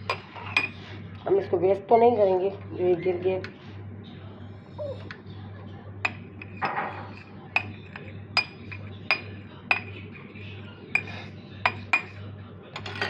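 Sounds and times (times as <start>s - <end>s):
steady low hum: 0.0s - 13.0s
metal spoon clinking cup: 6.1s - 10.1s, 10.9s - 12.2s, 12.8s - 13.0s.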